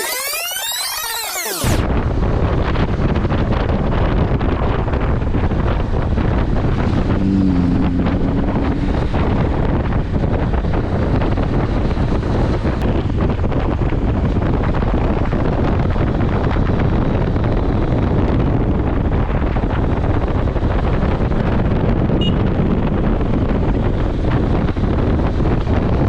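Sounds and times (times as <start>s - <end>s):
vehicle running noise: 1.7s - 26.0s
wind buffeting microphone: 1.8s - 26.0s
brief low tone: 7.2s - 9.5s.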